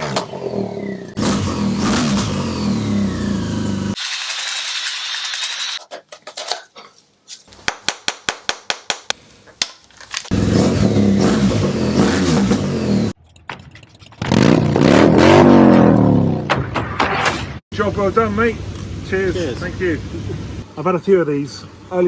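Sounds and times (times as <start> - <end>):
motorcycle engine revving: 0.0 - 4.0, 10.3 - 13.2, 14.2 - 16.5.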